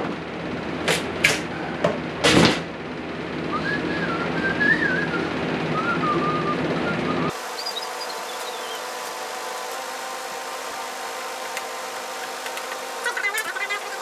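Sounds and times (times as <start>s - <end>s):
person whistling a tune: 3.5s - 7.4s.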